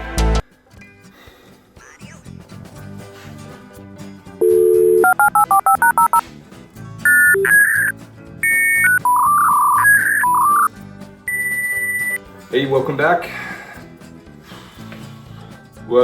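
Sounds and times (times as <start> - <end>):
background music: 0.0 - 16.0
electronic beeps and tones: 4.4 - 6.2, 7.1 - 10.7, 11.3 - 12.2.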